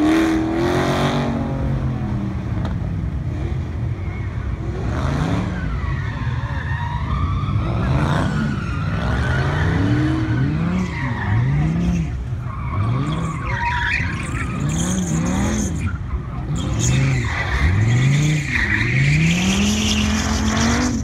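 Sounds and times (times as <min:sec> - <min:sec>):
car engine revving: 0:07.4 - 0:21.0.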